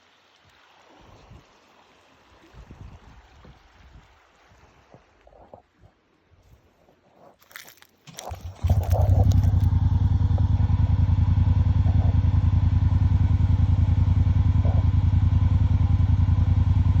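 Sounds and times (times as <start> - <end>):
engine clatter: 8.1 - 17.0
small engine running: 8.1 - 17.0.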